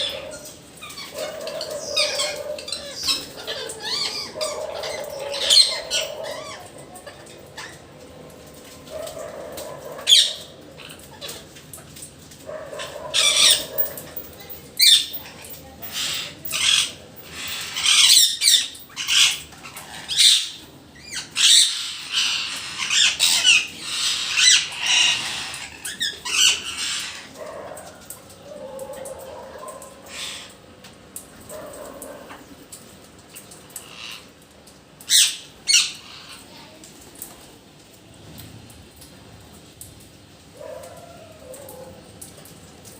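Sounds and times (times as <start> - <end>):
parrots squawking: 0.0 - 8.0, 8.6 - 11.8, 12.4 - 30.7, 33.7 - 34.4, 35.0 - 36.6.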